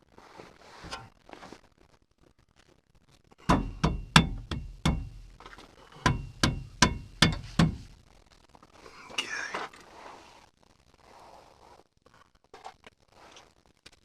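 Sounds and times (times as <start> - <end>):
hammer striking steel: 3.5 - 5.4, 6.0 - 7.9.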